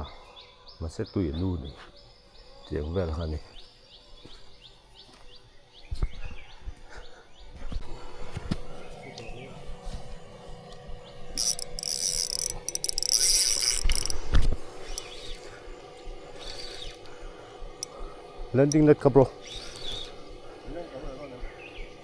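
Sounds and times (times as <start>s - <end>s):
fishing reel clicking and buzzing: 11.4s - 15.5s, 16.3s - 18.0s, 18.6s - 20.2s.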